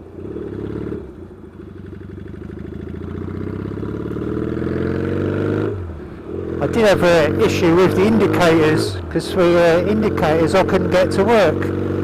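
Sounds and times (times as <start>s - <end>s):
motorcycle engine accelerating: 0.0s - 12.0s.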